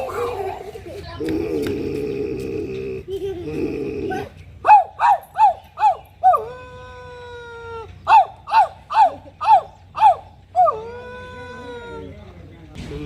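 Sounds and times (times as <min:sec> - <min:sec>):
man imitating dog howl: 0:06.2 - 0:08.2, 0:10.6 - 0:12.1.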